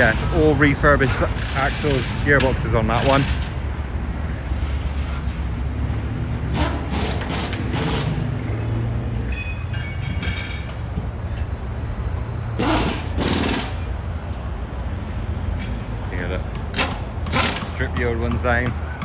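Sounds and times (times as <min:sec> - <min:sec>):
low engine rumble: 0:00.0 - 0:19.0
short high squeal: 0:11.3 - 0:12.0
hissing bursts: 0:12.6 - 0:13.9.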